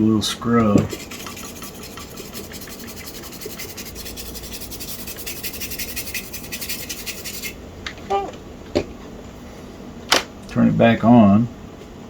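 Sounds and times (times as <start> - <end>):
circuit board being scrubbed: 0.8 - 7.6.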